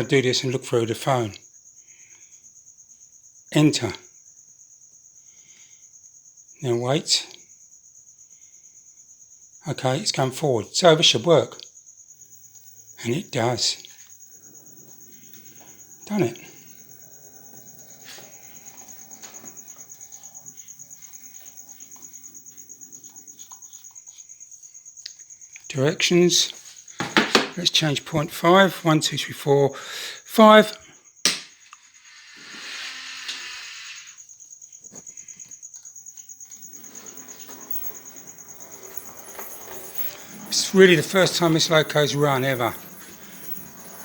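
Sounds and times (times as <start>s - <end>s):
model locomotive pulsing whine: 12.5s - 23.5s, 36.2s - 44.0s.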